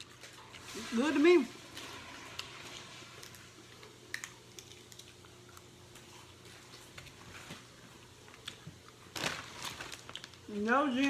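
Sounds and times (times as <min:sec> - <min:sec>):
tortilla chips being chewed: 0:00.0 - 0:00.9, 0:01.6 - 0:10.5.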